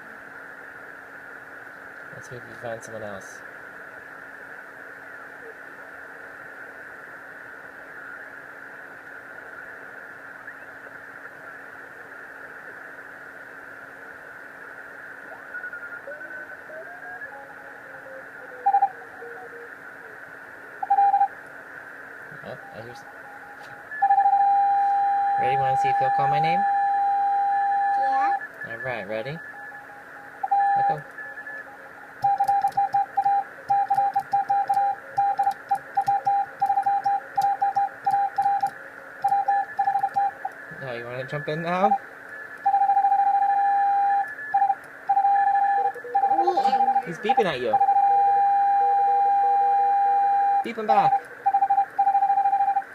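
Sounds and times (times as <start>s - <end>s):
radio receiver hiss: 0.0s - 52.9s
faint morse code signals: 15.3s - 21.4s, 22.3s - 52.9s.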